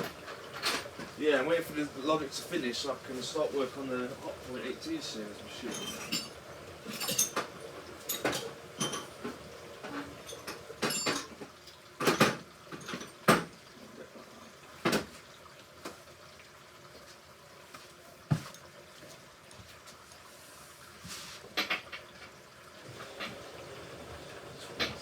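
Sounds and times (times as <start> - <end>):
washing machine drum tumbling laundry: 0.0 - 13.6, 21.0 - 25.0.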